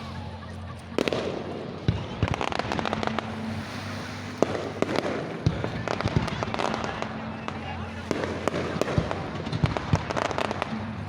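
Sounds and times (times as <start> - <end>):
fireworks bangs: 0.0 - 11.0
fireworks crackling: 0.0 - 11.0.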